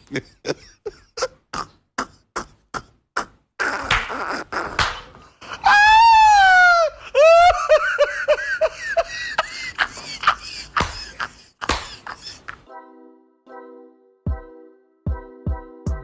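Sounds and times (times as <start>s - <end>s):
woman shrieking: 5.5s - 7.8s
woman laughing: 6.8s - 12.7s.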